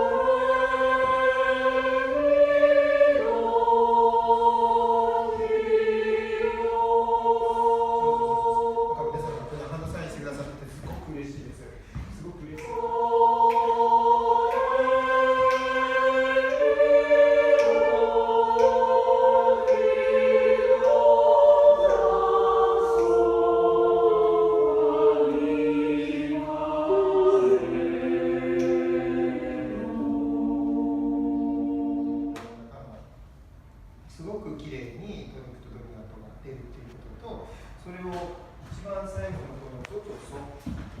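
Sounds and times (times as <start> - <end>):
choir singing sustained notes: 0.0 - 10.2, 12.6 - 32.8.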